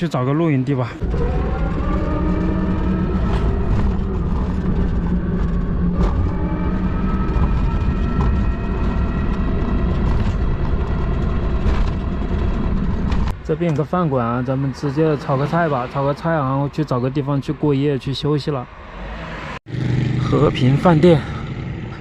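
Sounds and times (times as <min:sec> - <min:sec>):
road rumble: 0:00.0 - 0:22.0
wind: 0:00.0 - 0:22.0
electric motor whine: 0:01.0 - 0:13.2.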